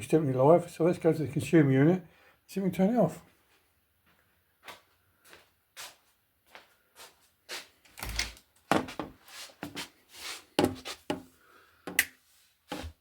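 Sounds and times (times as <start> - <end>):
footsteps walking: 3.2 - 11.2.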